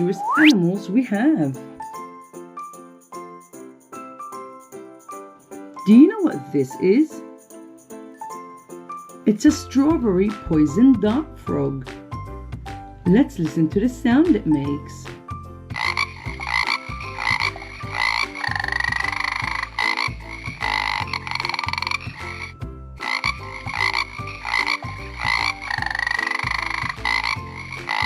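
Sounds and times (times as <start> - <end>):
frog buzzing trills: 15.7 - 28.0.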